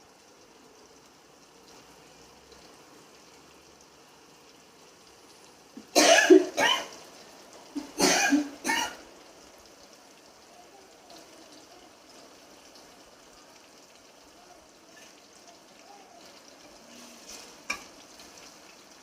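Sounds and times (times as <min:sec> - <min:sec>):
person coughing: 0:05.8 - 0:06.9, 0:07.8 - 0:09.0.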